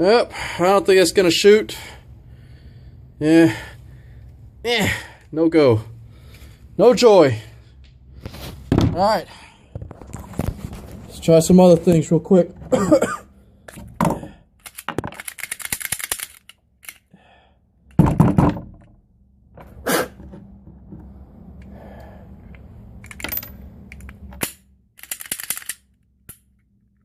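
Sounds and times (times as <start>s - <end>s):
heavy thump: 8.7s - 9.1s
pistol action clicking and rattling: 14.6s - 17.1s, 23.0s - 26.6s.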